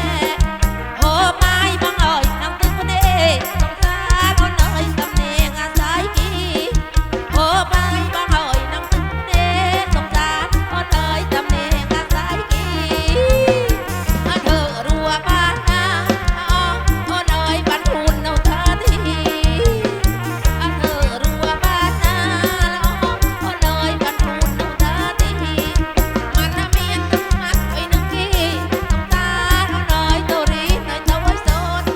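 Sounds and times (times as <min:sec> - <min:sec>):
bass line: 0:00.0 - 0:31.9
drum beat: 0:00.0 - 0:31.9
wavering high melody: 0:11.2 - 0:25.8.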